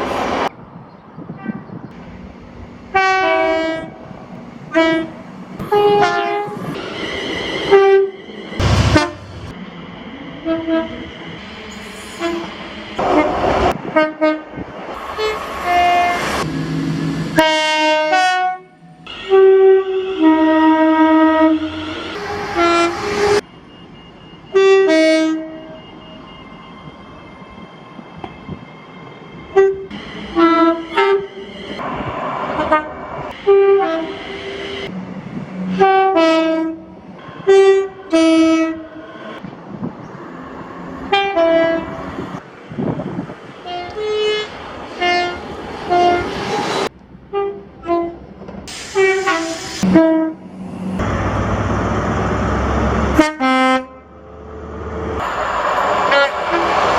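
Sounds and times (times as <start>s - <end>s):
rumbling train noise: 0.0s - 56.9s
train horns blasting: 2.9s - 4.1s, 4.7s - 6.8s, 7.6s - 9.6s, 10.4s - 11.1s, 12.1s - 23.4s, 24.5s - 26.7s, 29.4s - 31.8s, 32.5s - 34.9s, 35.6s - 39.0s, 41.1s - 42.2s, 43.6s - 46.6s, 47.3s - 48.2s, 49.0s - 50.5s, 53.1s - 54.1s, 56.0s - 56.9s.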